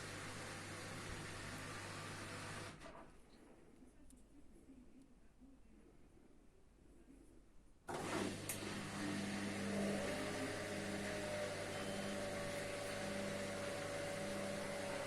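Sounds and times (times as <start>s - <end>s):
washing machine motor hum: 0.0s - 2.9s, 7.9s - 15.0s.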